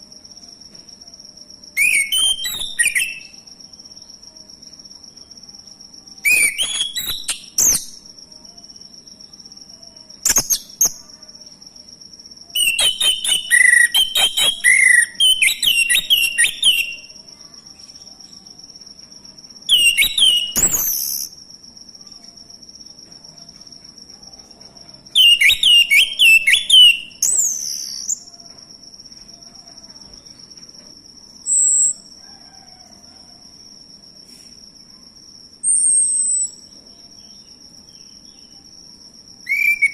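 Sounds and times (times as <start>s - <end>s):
high-pitched insect drone: 0.0s - 39.9s
thrush whistling song: 1.8s - 3.4s, 6.2s - 8.0s, 12.5s - 17.1s, 19.7s - 21.3s, 25.2s - 28.2s, 39.5s - 39.9s.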